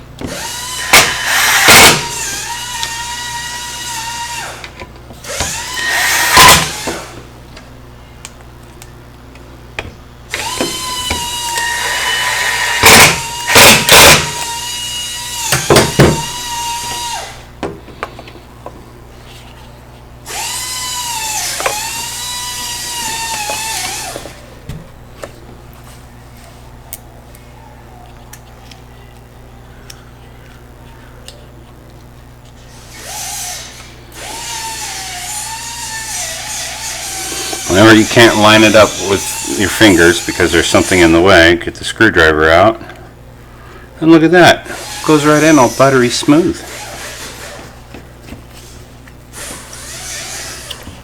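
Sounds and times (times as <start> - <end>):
cordless drill motor whine: 0.2 - 7.3, 10.3 - 18.2, 20.2 - 24.5, 32.6 - 41.4, 44.6 - 47.9, 48.6 - 51.0.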